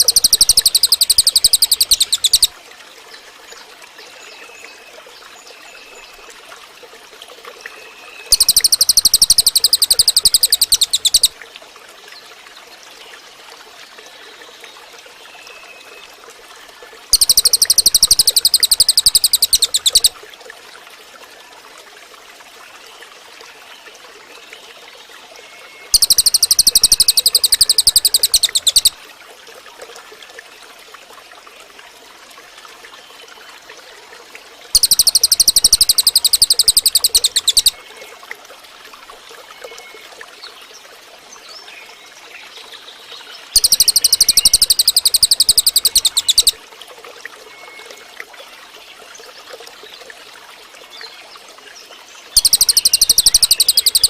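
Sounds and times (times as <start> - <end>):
bird buzzing trill: 0.0 - 2.5, 8.3 - 11.3, 17.2 - 20.1, 26.0 - 28.9, 34.8 - 37.7, 43.6 - 46.5
soft bird chirps: 0.0 - 2.5, 7.7 - 11.3, 17.1 - 20.1, 25.8 - 29.0, 34.8 - 37.8, 41.5 - 46.6, 52.3 - 54.0
trickling water: 0.0 - 54.0.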